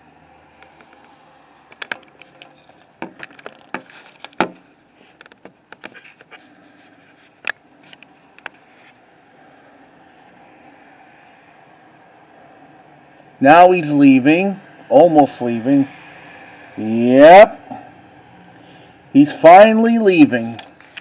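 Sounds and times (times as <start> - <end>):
faint steady background noise: 0.0 - 21.0
sharp clicks and knocks: 0.6 - 6.3.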